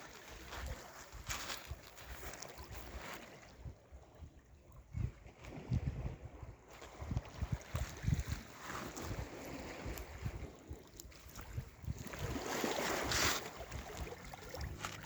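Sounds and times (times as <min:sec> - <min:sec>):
wind buffeting microphone: 0:00.4 - 0:15.0
sea waves washing onto shore: 0:11.9 - 0:15.0.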